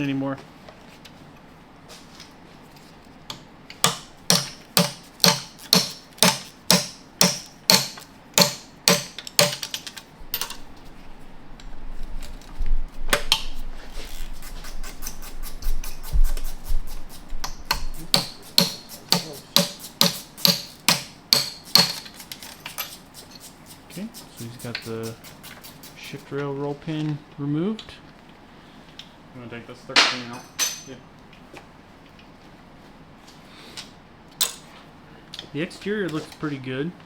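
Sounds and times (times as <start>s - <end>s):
hammer striking metal punch: 3.8s - 9.8s, 17.4s - 22.1s.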